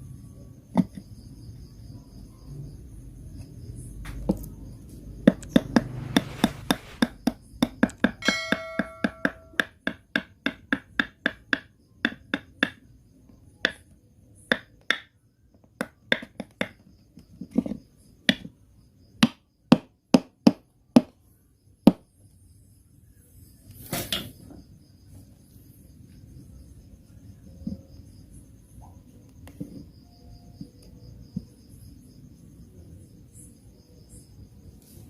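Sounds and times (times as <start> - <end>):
hammer striking wood: 5.3 - 12.8
brief metallic ring: 8.2 - 9.5.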